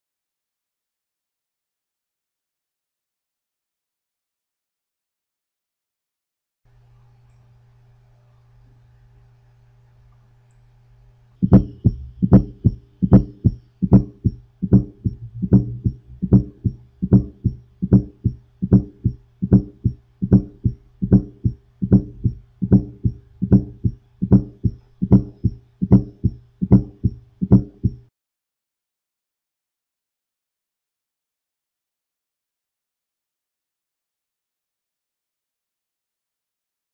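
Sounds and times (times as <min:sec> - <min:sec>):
steady low hum: 0:06.7 - 0:28.1
heartbeat through stethoscope: 0:11.4 - 0:28.1.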